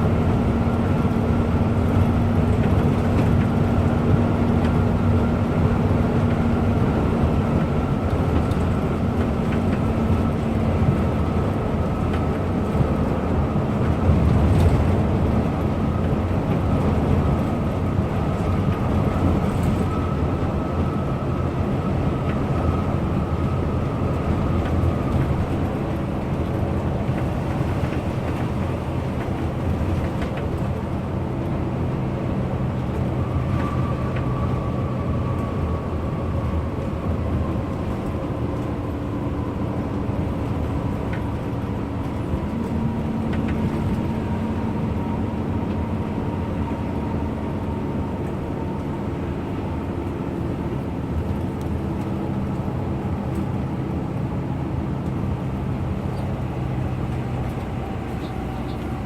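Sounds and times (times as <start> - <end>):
bus engine drone: 0.0 - 59.0
road noise: 0.0 - 59.0.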